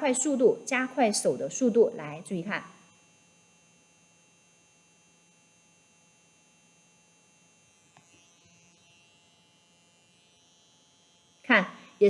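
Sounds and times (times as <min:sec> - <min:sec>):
tattoo machine humming: 0:00.0 - 0:12.0
small click: 0:07.9 - 0:08.2.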